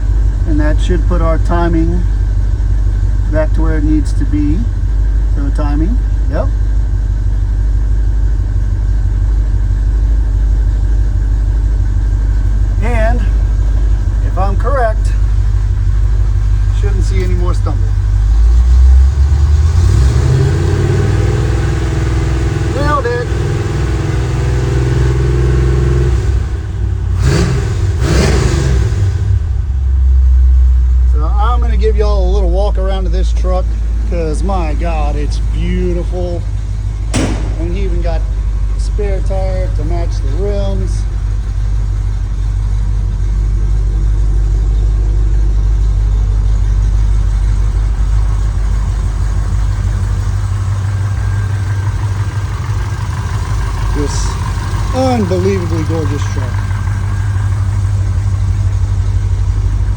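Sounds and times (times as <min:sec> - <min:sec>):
pickup truck engine running: 0:00.0 - 0:59.9
engine revving blips: 0:12.7 - 0:29.7, 0:32.6 - 0:59.9.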